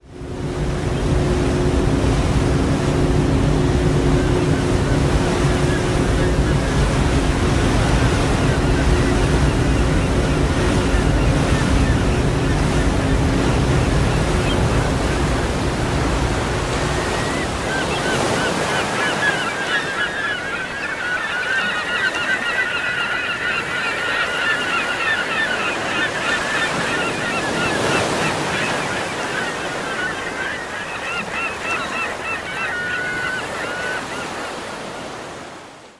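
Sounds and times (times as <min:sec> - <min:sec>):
ocean surf on beach: 0:00.0 - 0:35.9
low steady hum: 0:00.1 - 0:17.7
flock of birds honking: 0:00.5 - 0:34.9.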